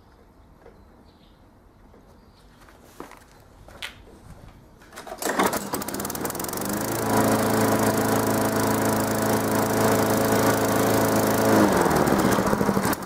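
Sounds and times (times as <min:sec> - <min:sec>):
lawnmower engine pull-started: 0:04.8 - 0:13.0.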